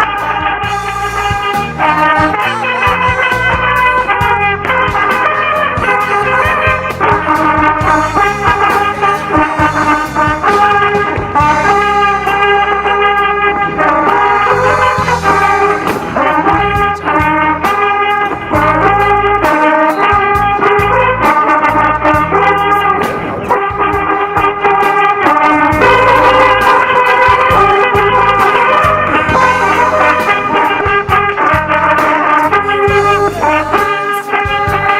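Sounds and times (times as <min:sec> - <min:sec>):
bass: 0:00.0 - 0:34.9
brass instruments melody: 0:00.0 - 0:34.9
guitar: 0:00.0 - 0:34.9
steady drum beat: 0:00.0 - 0:34.9.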